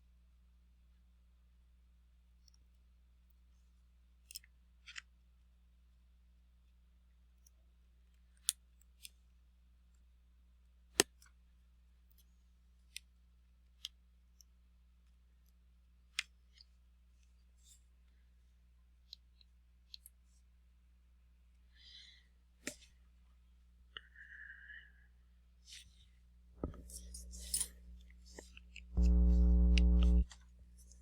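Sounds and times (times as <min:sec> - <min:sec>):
faint low hum: 0:23.9 - 0:31.0.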